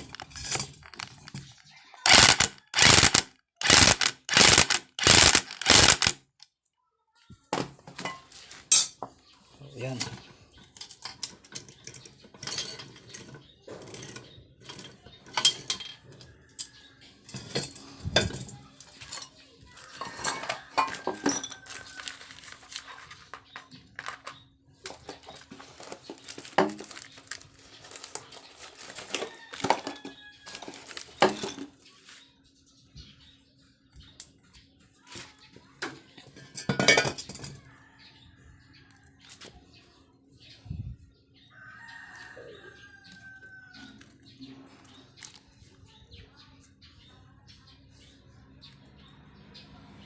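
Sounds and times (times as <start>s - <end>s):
metal tools clinking and knocking: 0.0s - 6.1s, 7.6s - 9.1s, 10.0s - 31.8s, 35.8s - 37.7s.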